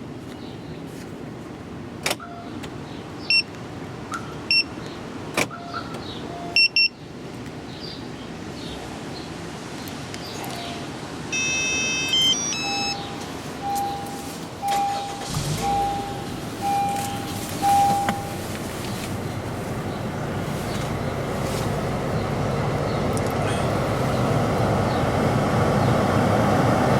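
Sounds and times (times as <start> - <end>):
short electronic beeps: 4.5 - 4.7, 6.5 - 6.9, 10.4 - 18.4
low repeating beep: 11.3 - 18.4
stepped electronic melody: 11.4 - 14.2
sharp clicks: 23.1 - 23.5.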